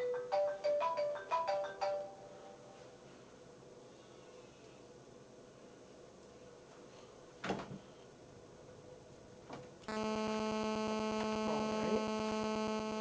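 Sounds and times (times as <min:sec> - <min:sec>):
electrical buzz: 0:09.9 - 0:13.0.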